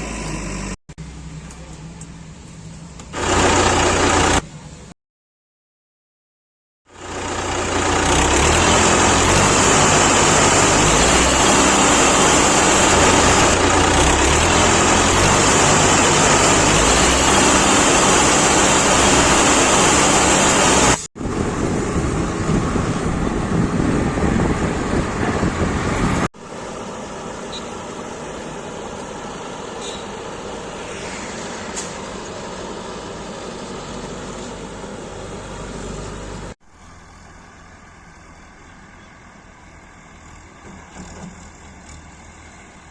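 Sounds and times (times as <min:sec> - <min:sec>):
heavy machinery engines rumbling: 0:00.0 - 0:04.9, 0:06.9 - 0:42.9.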